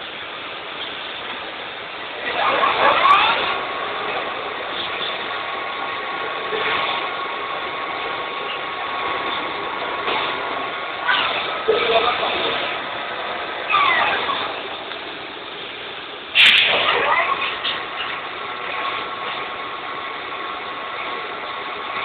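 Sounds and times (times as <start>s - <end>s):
lathe high whine: 0.0s - 22.0s
lathe machine noise: 0.0s - 22.0s.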